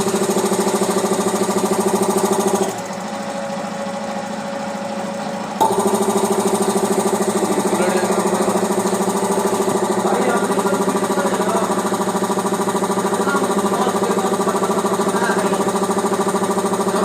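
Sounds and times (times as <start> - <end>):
air compressor pulsing: 0.0 - 17.0
compressor click: 5.6 - 15.1.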